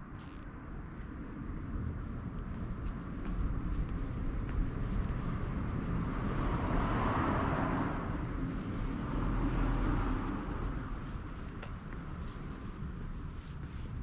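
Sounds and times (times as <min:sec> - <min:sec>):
vehicle passing: 0:03.3 - 0:13.8.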